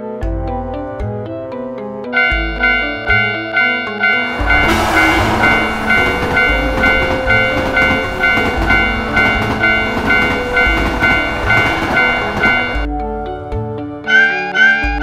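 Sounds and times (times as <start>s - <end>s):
railroad crossing bell ringing: 2.2s - 12.9s
train rumbling and clattering: 2.2s - 12.9s.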